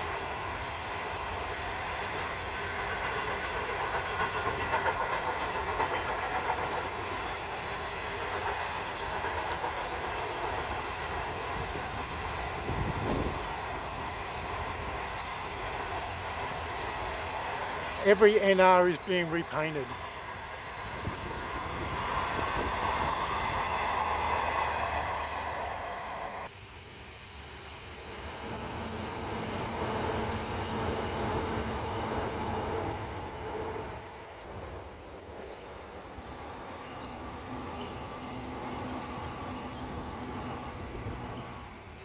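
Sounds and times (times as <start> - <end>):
train wheels rolling on rails: 0.0 - 42.0.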